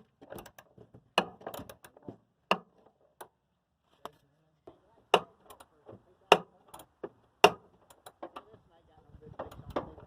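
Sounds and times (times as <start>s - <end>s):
hand tool knocks and clicks: 0.2s - 3.3s.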